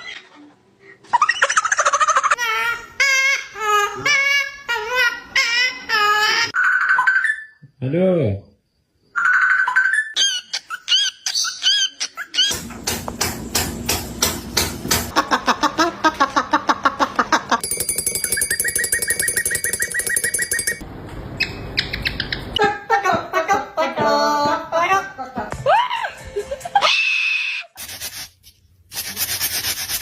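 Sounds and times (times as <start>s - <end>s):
parrot rapid clicking: 17.6s - 20.8s
parrot rhythmic pitched pulses: 17.6s - 20.8s.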